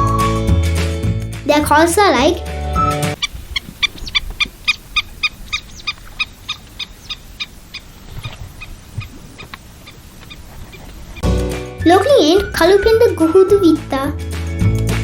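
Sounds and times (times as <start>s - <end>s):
godwit calling: 3.1s - 13.2s.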